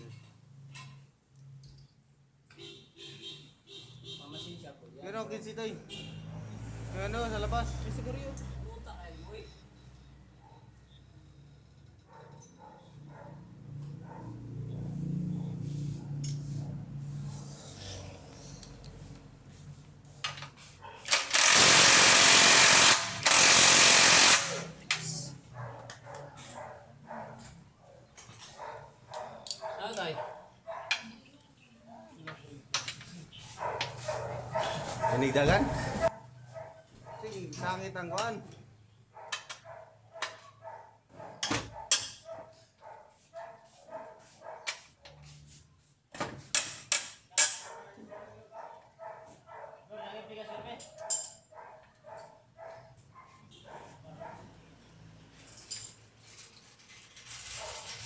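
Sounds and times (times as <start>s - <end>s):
dog barking: 10.4s - 10.8s, 12.1s - 14.6s, 20.8s - 21.1s, 25.5s - 31.2s, 33.5s - 37.3s, 39.1s - 44.9s, 47.6s - 49.9s, 50.9s - 54.7s, 57.5s - 57.9s
tool clicks and knocks: 20.3s - 25.0s
pneumatic impact wrench hammering: 21.0s - 25.2s.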